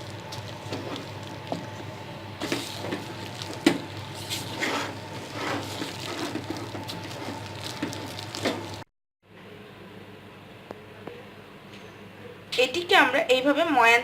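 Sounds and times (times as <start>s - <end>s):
dough squishing and scraping: 0.0s - 8.9s.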